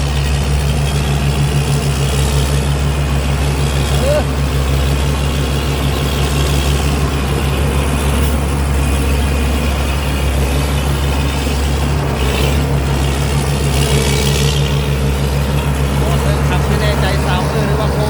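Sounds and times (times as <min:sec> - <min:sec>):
diesel engine running under load: 0:00.0 - 0:18.0
threshing machinery rushing: 0:00.0 - 0:18.0.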